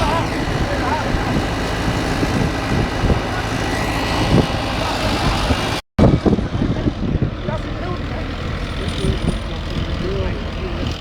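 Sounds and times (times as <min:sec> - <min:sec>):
faint voices: 0:00.0 - 0:05.7
tractor engine running: 0:00.0 - 0:11.0.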